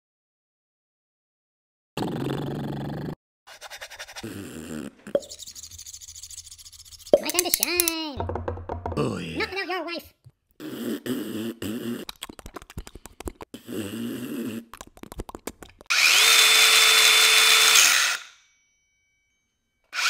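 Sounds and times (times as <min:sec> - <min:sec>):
electric power drill running: 0:15.9 - 0:18.4.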